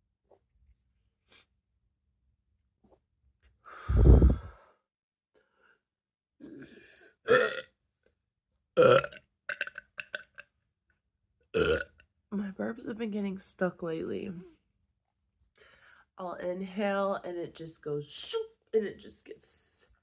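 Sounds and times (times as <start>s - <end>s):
small throat sounds: 6.4s - 7.6s, 11.6s - 11.9s
woman burping: 6.4s - 7.6s, 8.8s - 10.1s, 11.6s - 11.9s.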